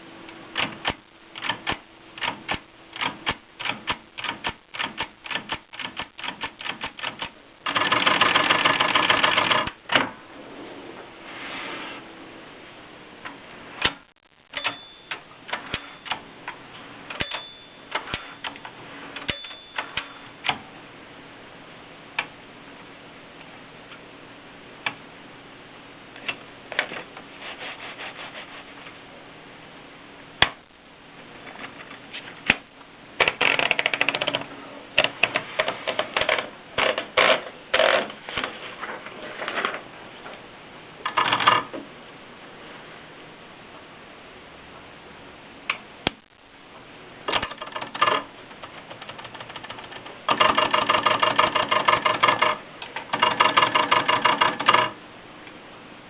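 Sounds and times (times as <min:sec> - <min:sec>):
manual typewriter keystrokes: 0:00.6 - 0:10.1, 0:33.2 - 0:38.0, 0:41.1 - 0:41.7, 0:47.3 - 0:55.0.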